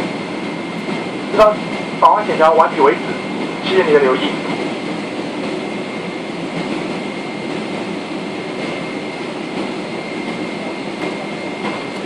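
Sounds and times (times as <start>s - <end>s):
aircraft cabin air rush: 0.0s - 12.0s
thin steady whine: 0.0s - 12.0s.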